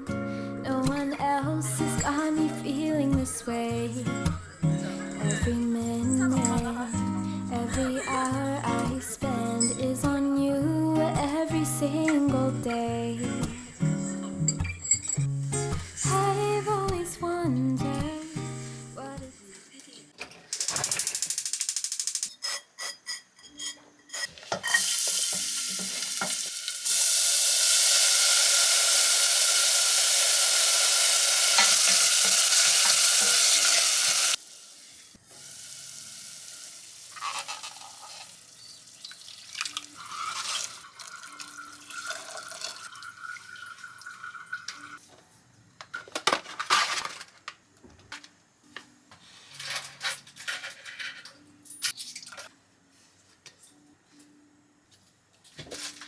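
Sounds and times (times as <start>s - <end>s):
dishes and utensils clinking: 4.3s - 6.7s, 9.5s - 9.8s, 14.2s - 15.4s, 22.0s - 26.5s, 37.1s - 38.4s, 39.6s - 43.0s.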